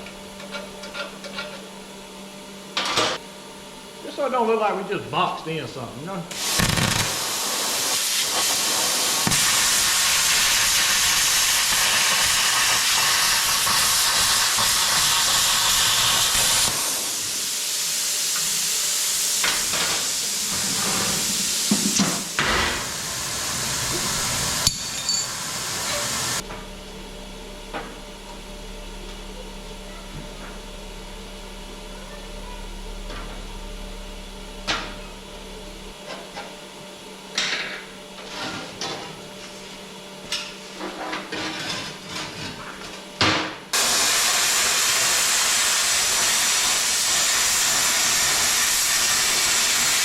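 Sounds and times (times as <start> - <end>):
plasma cutter hissing: 6.3 - 30.6, 43.8 - 50.0
low steady hum: 23.6 - 38.3.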